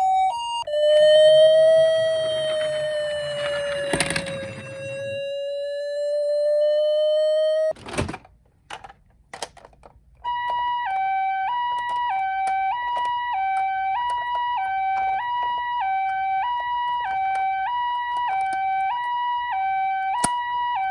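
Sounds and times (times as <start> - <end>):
steady held tone: 0.0 - 7.7
toy ambulance two-tone siren: 0.0 - 7.8, 10.2 - 20.9.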